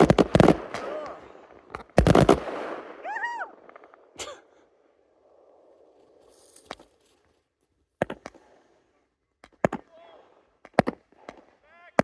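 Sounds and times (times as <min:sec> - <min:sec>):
firework bangs: 0:00.0 - 0:04.6.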